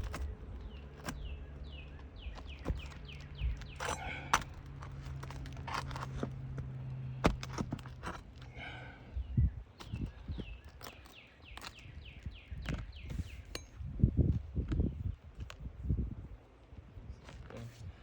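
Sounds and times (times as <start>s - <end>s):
shingles clicking and scraping: 0.0s - 8.8s, 9.7s - 13.8s.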